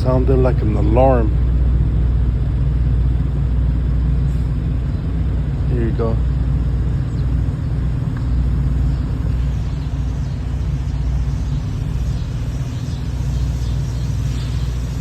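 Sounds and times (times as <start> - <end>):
low rumble: 0.0 - 15.0
high sliding bird calls: 6.9 - 15.0.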